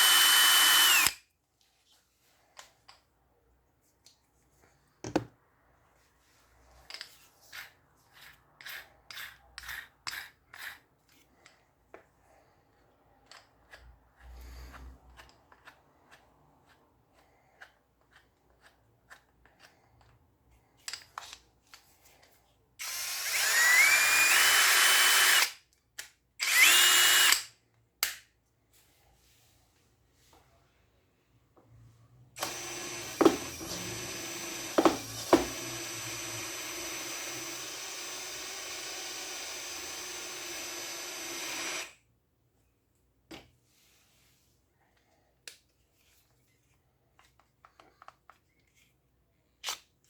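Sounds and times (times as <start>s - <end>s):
electric drill whining: 0.0s - 1.2s, 22.8s - 25.5s, 26.4s - 27.4s, 32.4s - 42.0s.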